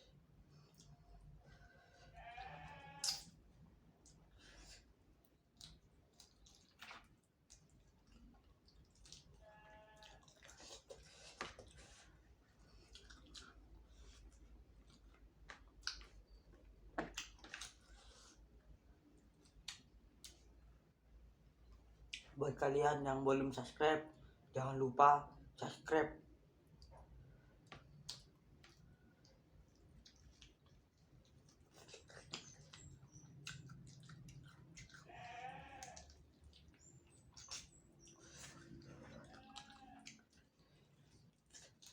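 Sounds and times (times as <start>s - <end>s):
wet chewing mouth clicks: 4.0s - 9.4s, 10.0s - 16.4s, 27.6s - 35.1s, 35.8s - 41.9s.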